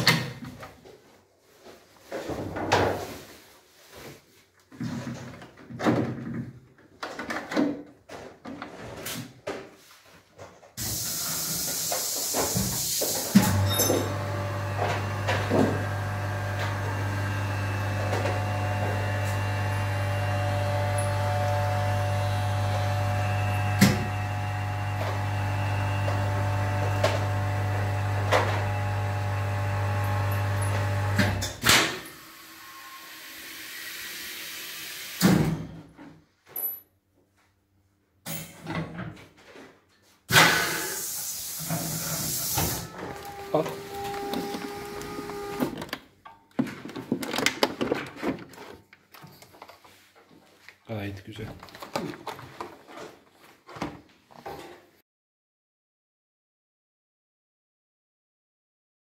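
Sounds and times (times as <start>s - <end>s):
packaging machine pump hum: 10.8s - 31.5s, 40.9s - 45.9s.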